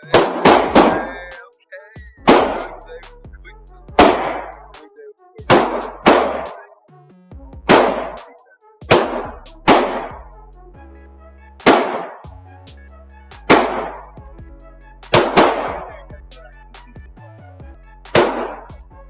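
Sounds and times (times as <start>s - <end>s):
pistol shots: 0.1s - 1.2s, 2.3s - 2.8s, 4.0s - 4.6s, 5.5s - 6.6s, 7.7s - 10.2s, 11.6s - 12.3s, 13.5s - 14.0s, 15.1s - 15.9s, 18.1s - 18.7s.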